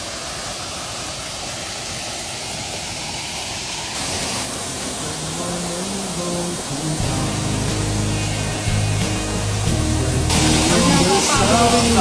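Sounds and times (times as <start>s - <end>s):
steady rushing hiss: 0.0s - 12.0s
background music: 6.0s - 12.0s.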